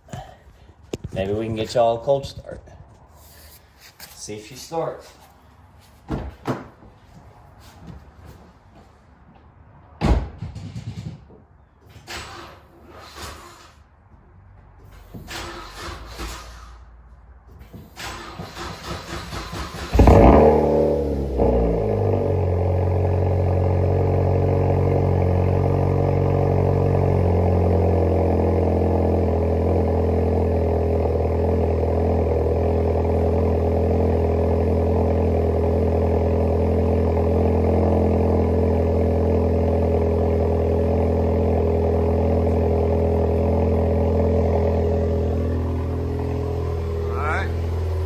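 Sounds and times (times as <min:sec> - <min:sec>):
car engine starting and idling: 0:14.6 - 0:48.0.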